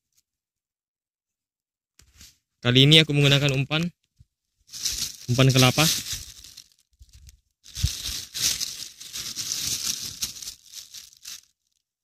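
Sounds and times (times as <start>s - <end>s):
material crinkling and rustling: 4.7s - 11.9s.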